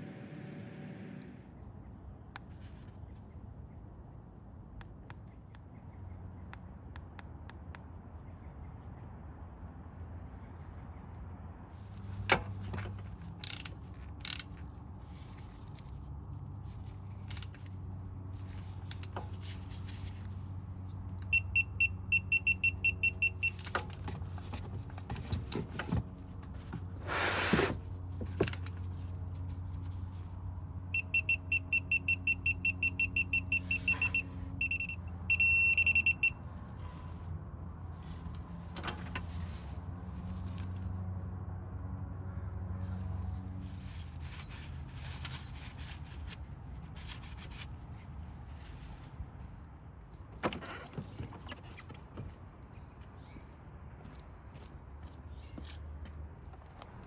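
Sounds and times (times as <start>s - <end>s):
high electronic beeps: 31.0s - 36.4s.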